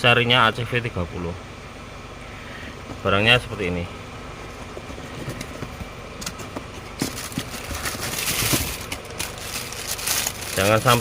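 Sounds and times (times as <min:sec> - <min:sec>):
low mechanical hum: 0:00.0 - 0:11.0
box rustling and clatter: 0:04.6 - 0:11.0.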